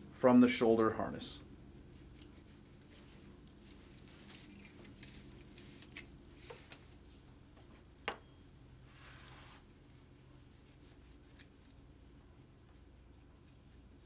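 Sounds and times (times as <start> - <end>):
soft rustle: 1.7 - 7.9, 8.8 - 14.0
strap buckles clinking: 3.6 - 6.8.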